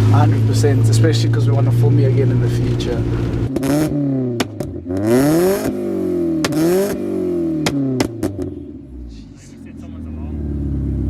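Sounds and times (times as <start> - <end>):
exhaust pops and bangs: 0.0 - 5.8, 6.4 - 8.6
car engine revving: 0.0 - 11.0.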